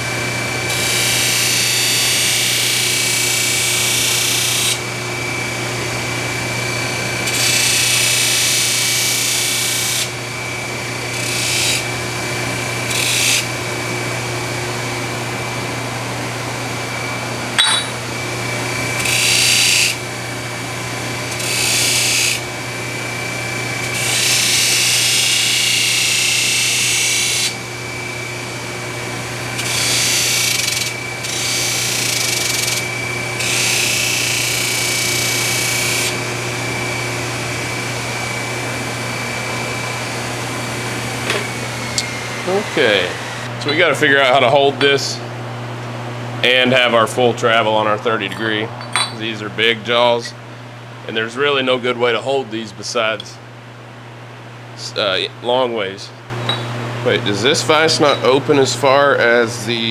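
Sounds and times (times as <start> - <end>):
sharp click: 17.6 - 18.0
machine tool humming: 38.8 - 43.7
high hissing cutting noise: 41.3 - 44.2.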